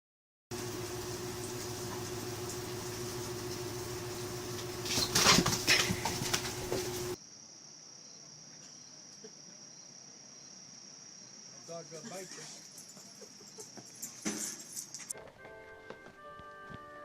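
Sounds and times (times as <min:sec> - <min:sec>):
loud rustling and scuffling: 0:04.7 - 0:07.2.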